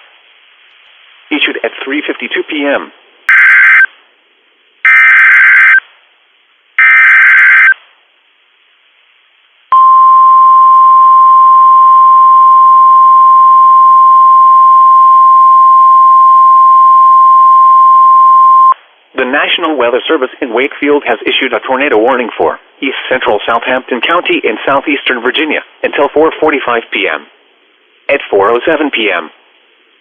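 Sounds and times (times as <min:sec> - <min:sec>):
data tone bursts: 0:03.3 - 0:03.9, 0:04.9 - 0:05.8, 0:06.8 - 0:07.8, 0:09.7 - 0:18.8
long steady alert tone: 0:03.3 - 0:03.9, 0:06.8 - 0:07.8, 0:09.7 - 0:18.8.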